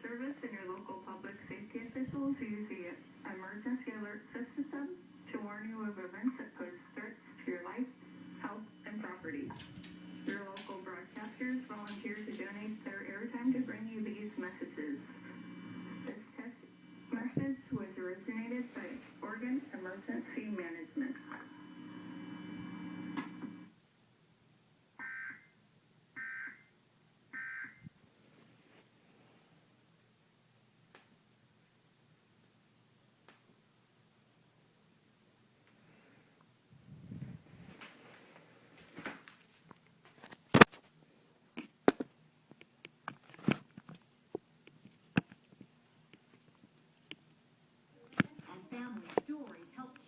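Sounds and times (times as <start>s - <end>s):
steady low hum: 0.0s - 23.7s.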